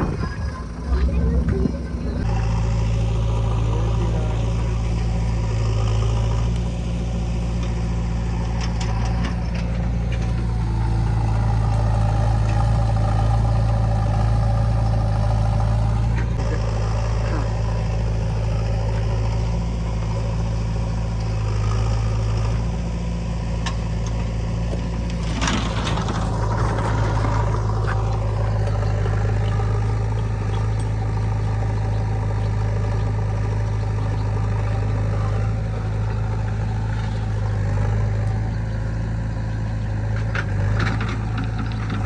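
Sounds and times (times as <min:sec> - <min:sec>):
heavy diesel engine running: 0:00.0 - 0:42.0
short clatter: 0:23.6 - 0:42.0.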